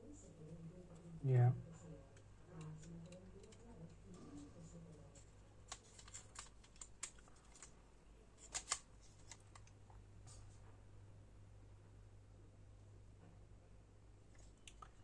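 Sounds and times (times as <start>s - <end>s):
low steady hum: 0.0s - 15.0s
plastic parts clicking and tapping: 2.2s - 4.0s, 5.1s - 7.7s, 8.4s - 9.8s.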